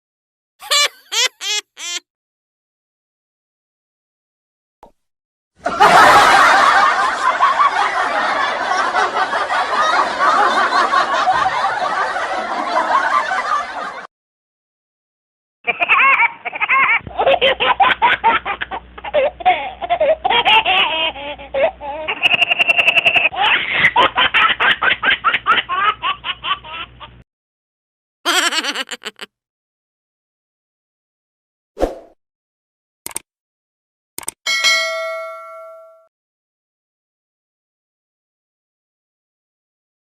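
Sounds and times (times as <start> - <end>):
high-pitched giggling: 0.6 - 2.0, 18.6 - 23.3, 28.3 - 29.3
quick clicks: 34.2 - 34.4
bell dinging: 34.5 - 36.1.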